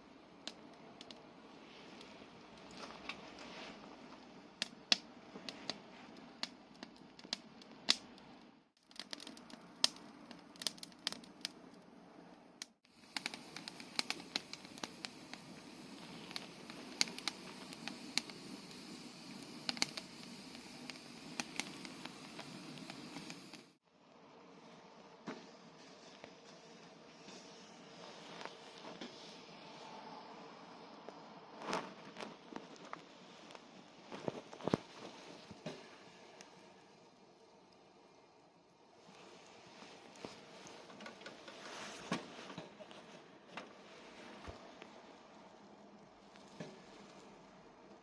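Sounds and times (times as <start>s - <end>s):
fire hissing: 0.0s - 11.8s, 12.6s - 23.8s, 25.3s - 43.0s
wood fire crackling and popping: 0.2s - 11.9s, 12.6s - 23.8s, 31.1s - 38.3s, 39.0s - 45.0s.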